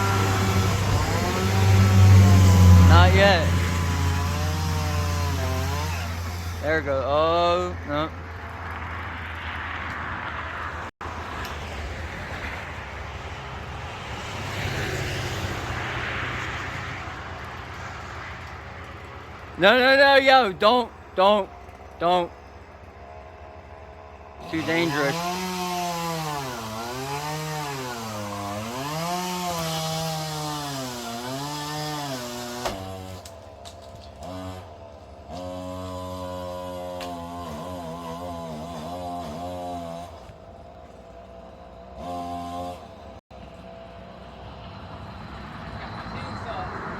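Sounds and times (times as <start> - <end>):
chainsaw engine running: 0.0 - 8.8, 16.7 - 44.4.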